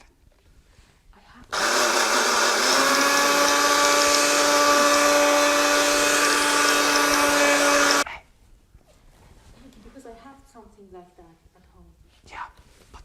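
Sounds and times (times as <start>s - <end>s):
electric blender motor running: 1.6s - 8.0s.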